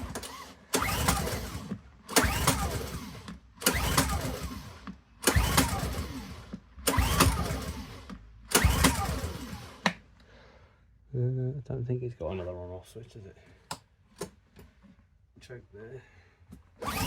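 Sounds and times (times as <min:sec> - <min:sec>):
engine cranking whir: 0:00.0 - 0:10.0, 0:16.8 - 0:17.0
generator recoil starter pulls: 0:00.0 - 0:10.0, 0:16.8 - 0:17.0.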